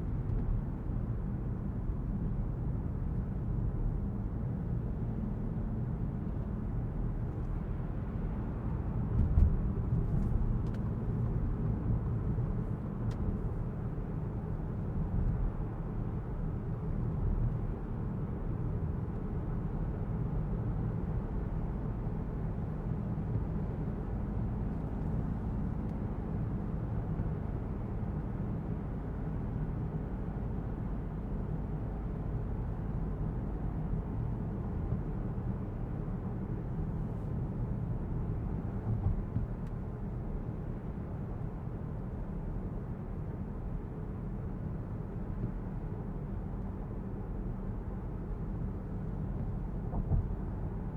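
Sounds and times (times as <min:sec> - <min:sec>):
car tyres and engine rumbling: 0:00.0 - 0:50.9
brief thump: 0:49.9 - 0:50.3.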